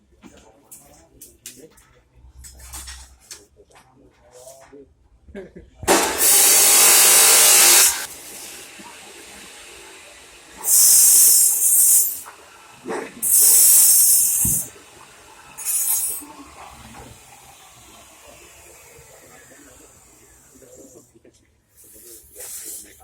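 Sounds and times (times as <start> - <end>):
welding sizzling hiss: 5.9 - 21.1, 21.8 - 23.0.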